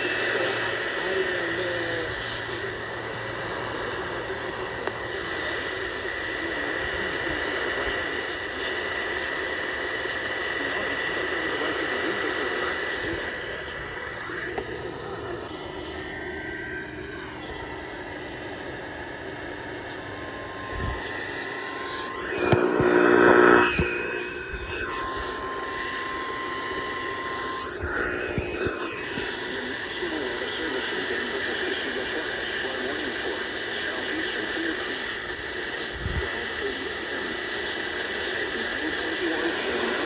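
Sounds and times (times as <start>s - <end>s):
radio static hiss: 0.0s - 40.0s
thin high tone: 13.4s - 31.4s
buzzy burst of stacked tones: 19.7s - 31.0s.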